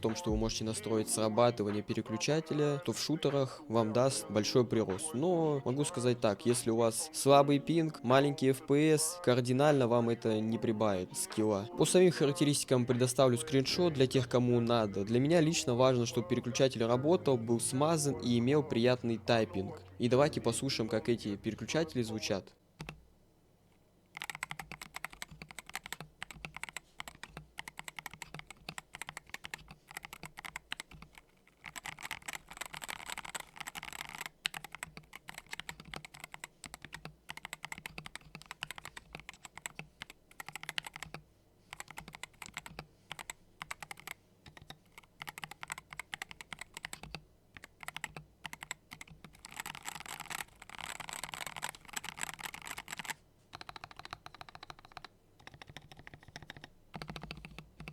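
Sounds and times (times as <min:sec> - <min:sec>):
keyboard keystroke clicks: 0:24.2 - 0:41.2, 0:41.8 - 0:57.9.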